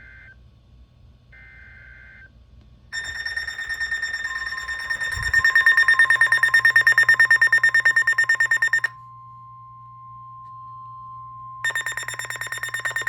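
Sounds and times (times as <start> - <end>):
steady single-pitch alert tone: 3.0 - 8.9, 11.6 - 13.0
pulsing buzzing data burst: 11.7 - 13.0.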